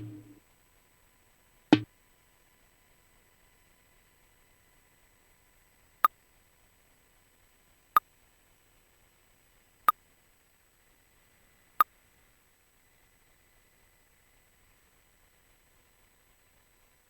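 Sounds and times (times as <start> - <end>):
drum machine click: 0.0 - 0.4.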